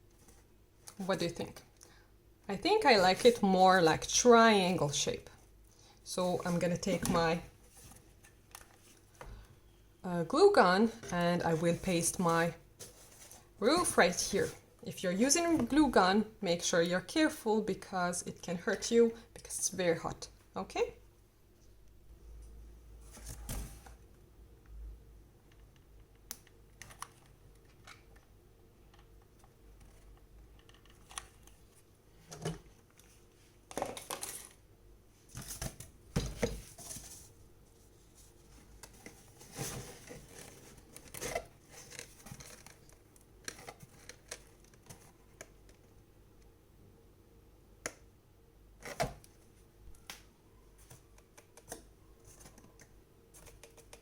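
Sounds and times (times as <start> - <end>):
cardboard rustling scrapes: 11.4 - 14.7, 36.4 - 42.8.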